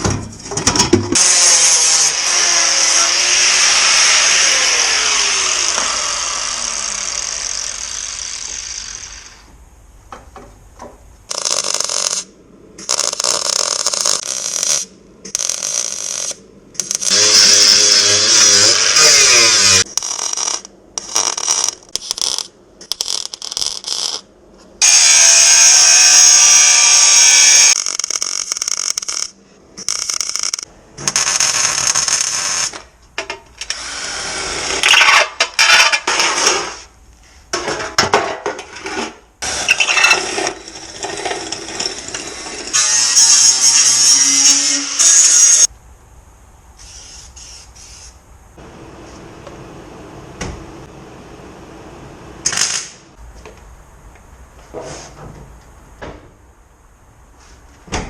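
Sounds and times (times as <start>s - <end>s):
power tool cutting sheet steel: 1.2s - 9.4s, 16.9s - 20.4s, 24.8s - 27.8s, 41.9s - 45.7s.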